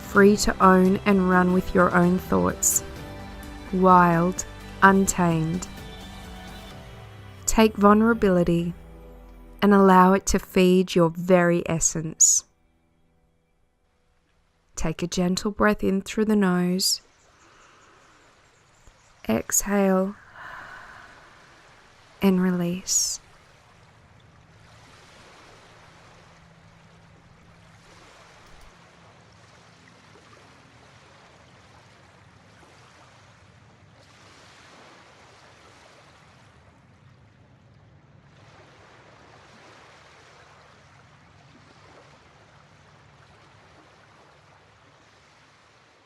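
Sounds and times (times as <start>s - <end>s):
faint rushing water: 16.9s - 46.0s.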